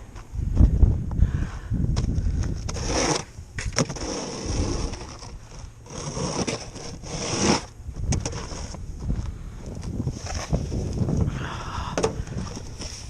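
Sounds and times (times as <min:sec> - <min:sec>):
snow shovel scraping ground: 0:02.6 - 0:08.8, 0:10.0 - 0:10.9, 0:12.4 - 0:13.0.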